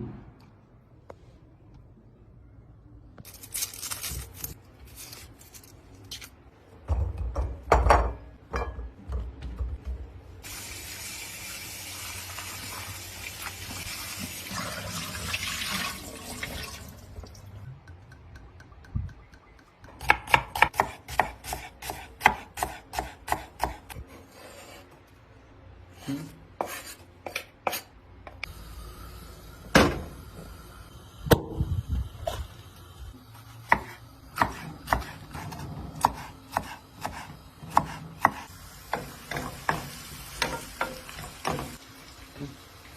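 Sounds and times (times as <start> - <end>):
knife chopping on cutting board: 20.0 - 24.0, 33.7 - 39.9.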